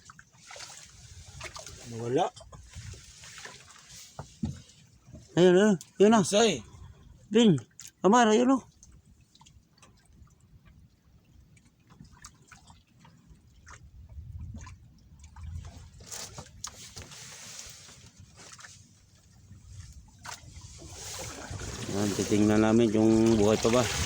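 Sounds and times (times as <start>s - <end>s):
water sloshing and trickling: 0.0s - 24.0s
small clicks and drips: 7.6s - 8.0s, 8.6s - 20.5s.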